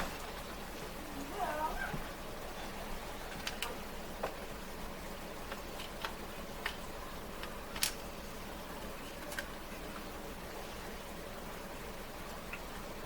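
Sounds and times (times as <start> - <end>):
faint steady hiss: 0.0 - 13.0
small parts clicking and tapping: 5.5 - 6.8, 7.4 - 8.0.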